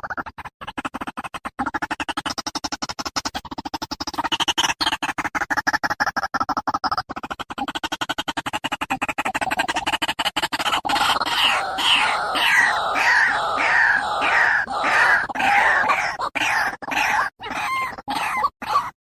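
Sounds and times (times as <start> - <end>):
waterhen calling: 10.9 - 19.0.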